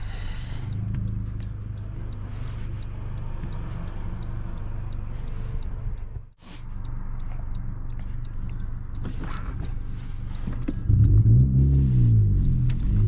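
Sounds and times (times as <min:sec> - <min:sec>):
car engine running: 0:00.0 - 0:13.0
light ticking: 0:00.0 - 0:13.0.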